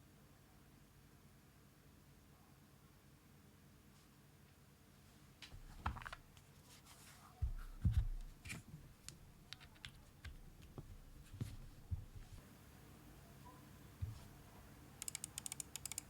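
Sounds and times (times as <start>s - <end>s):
mechanical keyboard key presses: 15.0s - 16.0s.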